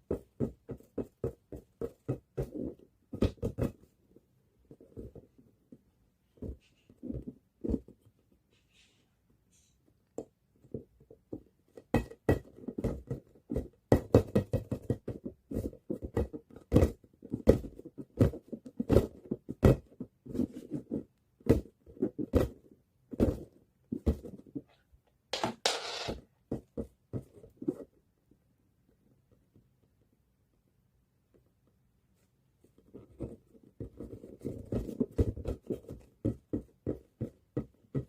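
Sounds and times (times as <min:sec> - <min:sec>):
ball bouncing: 0:25.4 - 0:26.2.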